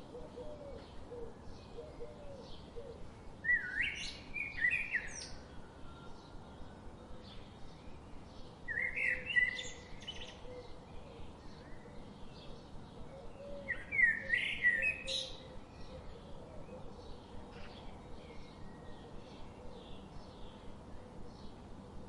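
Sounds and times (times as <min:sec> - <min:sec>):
bird singing: 0:00.0 - 0:21.8.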